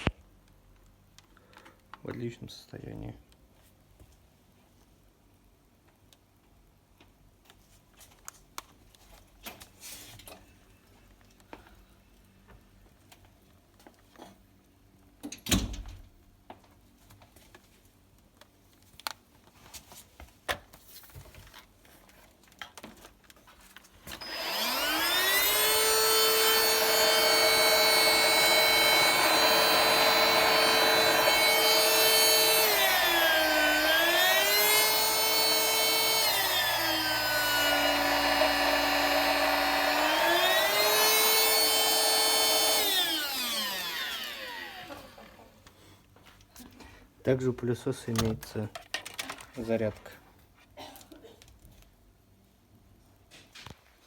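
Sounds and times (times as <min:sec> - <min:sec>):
vacuum cleaner motor whine: 0:24.1 - 0:45.6.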